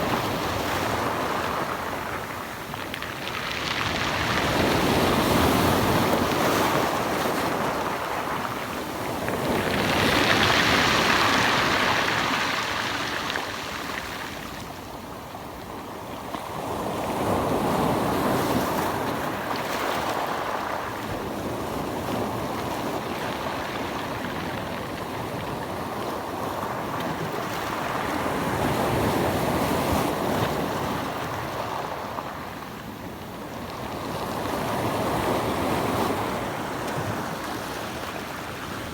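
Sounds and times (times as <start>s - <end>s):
sea waves washing in: 0.0s - 15.0s.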